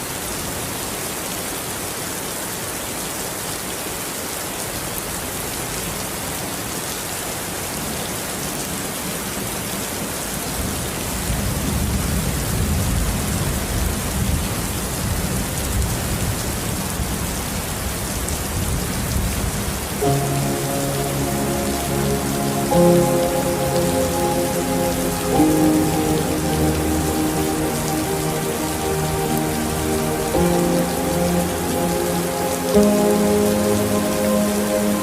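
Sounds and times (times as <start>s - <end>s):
steady rain falling: 0.0s - 35.0s
soft sustained music notes: 20.0s - 35.0s.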